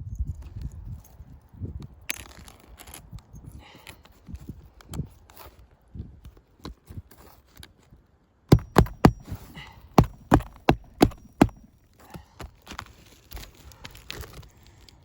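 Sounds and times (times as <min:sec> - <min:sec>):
hammer blows on a shingle roof: 0:08.5 - 0:12.3.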